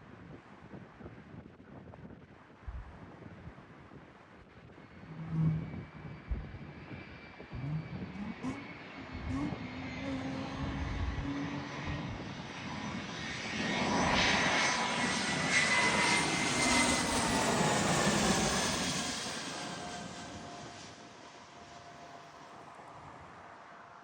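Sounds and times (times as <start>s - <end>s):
jet airliner passing: 4.8s - 24.0s.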